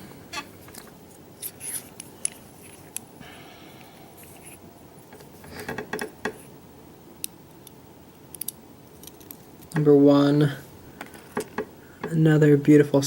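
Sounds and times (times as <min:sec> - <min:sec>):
small metal parts clicking: 0:08.3 - 0:09.8.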